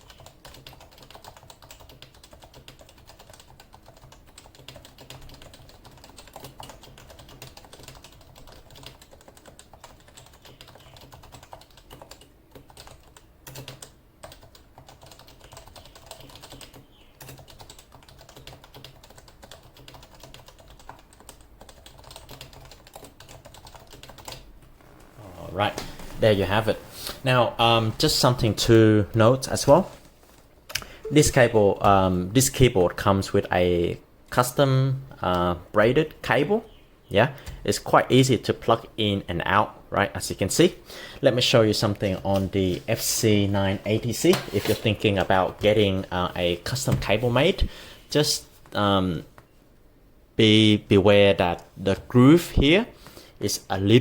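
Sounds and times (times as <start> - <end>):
fast typing on a keyboard: 0.0 - 24.5.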